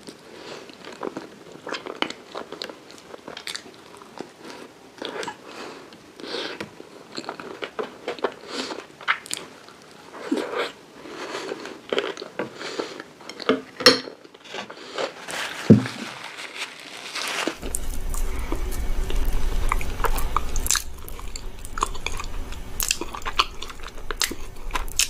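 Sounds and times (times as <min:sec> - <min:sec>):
crunching bites and chewing: 0:06.4 - 0:09.6, 0:16.8 - 0:25.0.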